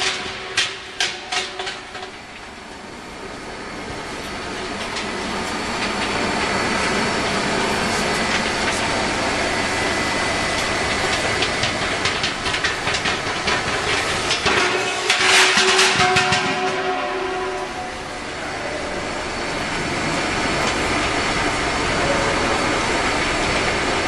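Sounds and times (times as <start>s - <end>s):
sharp clicks and clatter: 10.5s - 16.8s.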